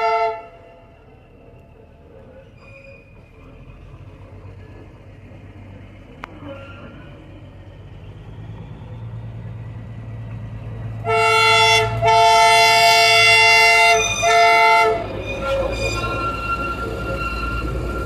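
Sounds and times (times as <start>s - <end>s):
train horn blasts: 0.0s - 0.9s, 11.0s - 18.0s
train rumbling: 0.0s - 18.0s.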